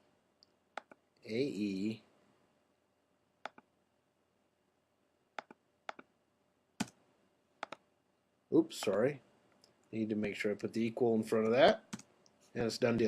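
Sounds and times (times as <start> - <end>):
mouse and keyboard clicks: 0.8 - 1.0, 3.4 - 3.7, 5.4 - 6.1, 7.6 - 7.8.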